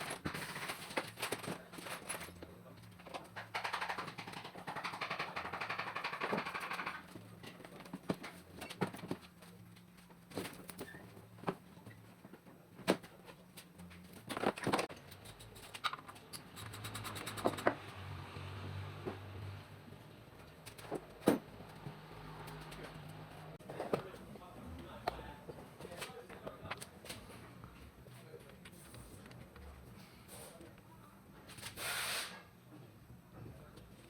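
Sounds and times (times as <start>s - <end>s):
clicks and knocks of tools: 13.6s - 17.8s
hiss: 31.8s - 32.4s.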